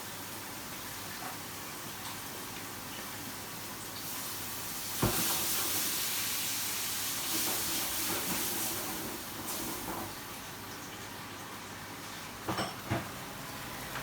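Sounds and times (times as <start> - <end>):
water sizzling in hot pan: 0.0 - 11.0.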